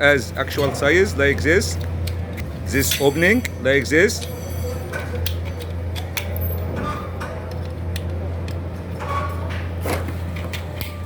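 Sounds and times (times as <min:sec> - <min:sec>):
steady low hum: 0:00.0 - 0:06.8.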